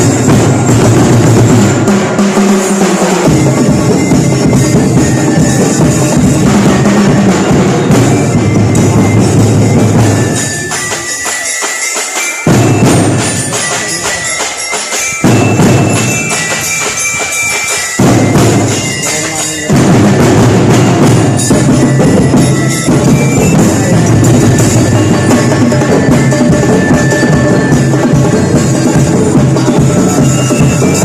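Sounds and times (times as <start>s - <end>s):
music with drum beat: 0.0s - 31.0s.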